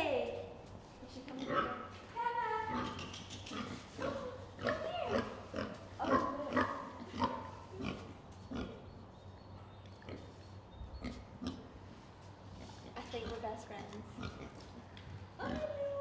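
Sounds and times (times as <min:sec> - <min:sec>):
pig grunting: 0:02.6 - 0:08.9, 0:12.6 - 0:14.7, 0:15.4 - 0:15.8.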